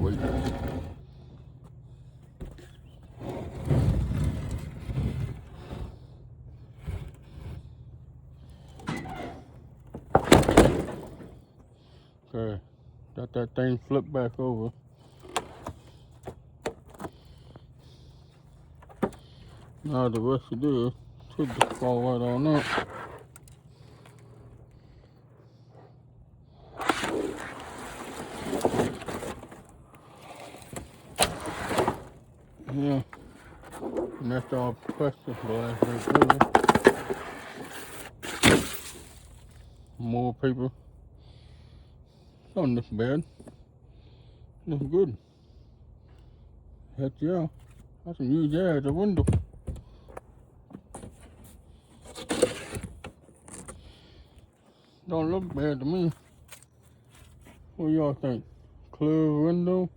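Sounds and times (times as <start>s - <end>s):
tv housing scraping and rustling: 8.5s - 11.5s, 15.1s - 20.3s, 21.4s - 25.0s, 26.8s - 39.6s, 50.8s - 54.1s
loud clatter of tv set down: 10.1s - 11.4s.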